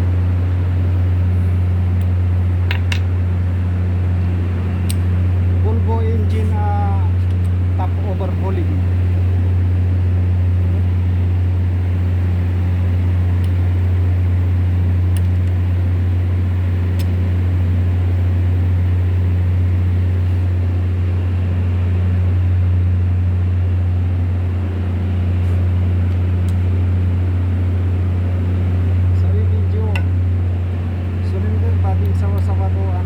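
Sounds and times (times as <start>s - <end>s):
diesel generator engine humming: 0.0s - 33.0s.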